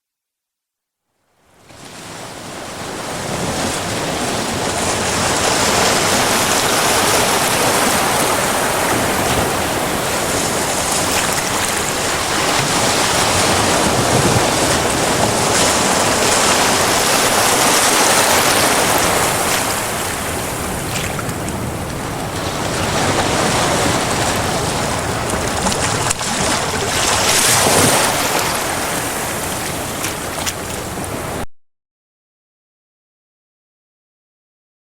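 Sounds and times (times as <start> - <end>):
waves breaking over rocks: 1.8 - 31.4.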